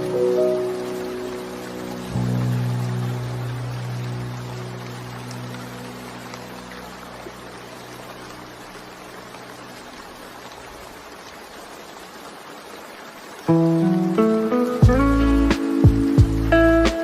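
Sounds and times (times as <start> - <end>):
steady rain: 0.0 - 17.0
low song notes: 13.5 - 17.0
music with loud chords: 14.2 - 17.0.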